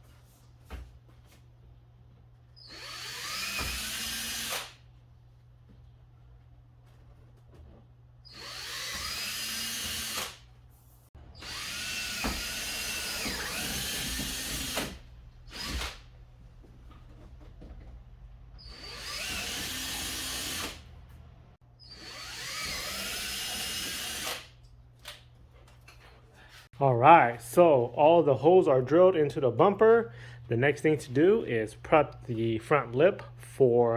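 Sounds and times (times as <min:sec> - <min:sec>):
power drill whining: 0:02.6 - 0:04.8, 0:08.3 - 0:10.4, 0:11.4 - 0:16.1, 0:18.6 - 0:20.9, 0:21.8 - 0:24.5.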